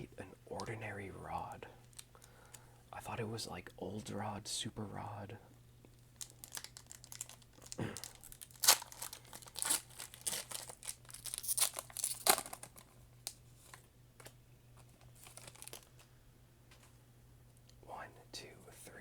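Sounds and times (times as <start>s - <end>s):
foil wrapper crinkling and tearing: 1.8s - 2.6s, 6.1s - 13.8s, 15.0s - 16.1s.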